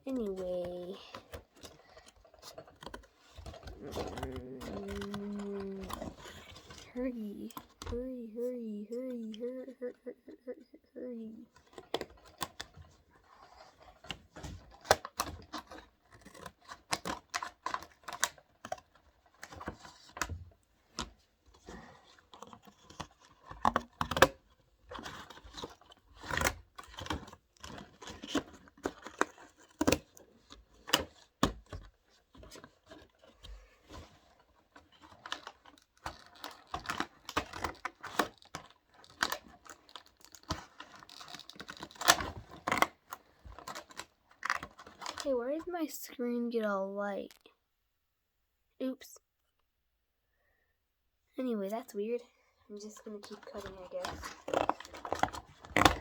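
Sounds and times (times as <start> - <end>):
material crinkling and rustling: 11.3 - 45.3, 52.8 - 56.0.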